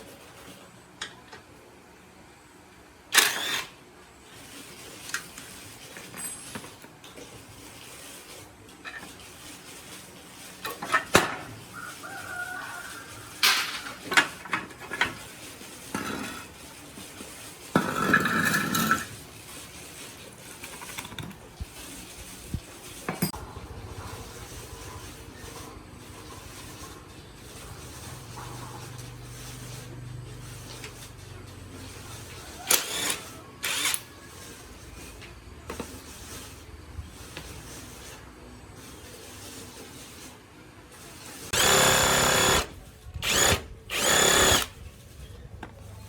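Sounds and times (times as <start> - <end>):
metal tools clinking and knocking: 6.0 - 6.8.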